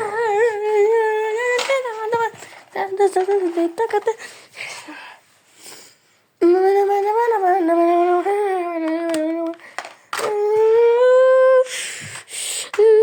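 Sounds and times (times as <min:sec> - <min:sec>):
person humming: 0:10.2 - 0:11.7.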